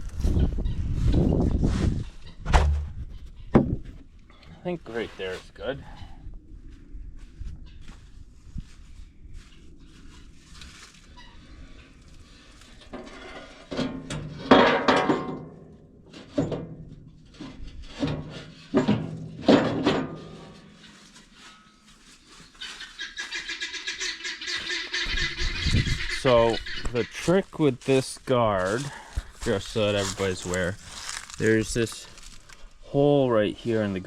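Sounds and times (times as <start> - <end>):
guinea fowl harsh calls: 22.5 - 27.3.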